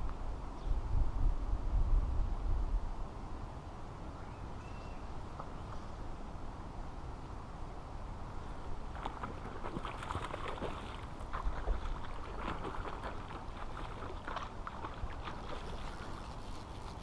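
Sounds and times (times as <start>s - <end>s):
low wind rumble: 0.0s - 16.4s
water splashing: 8.8s - 17.0s.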